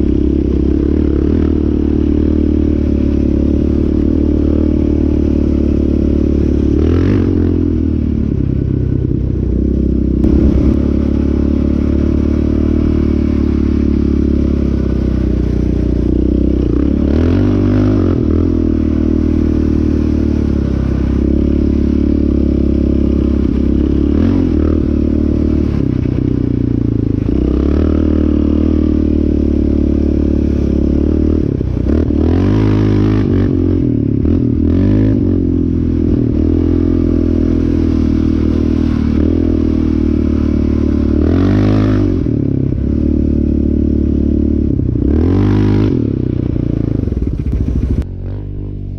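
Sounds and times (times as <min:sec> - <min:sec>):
atv engine running hard: 0:00.0 - 0:48.9.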